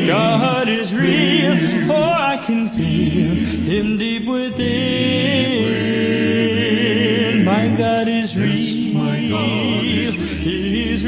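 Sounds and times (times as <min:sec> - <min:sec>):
a cappella group singing: 0:00.0 - 0:11.0.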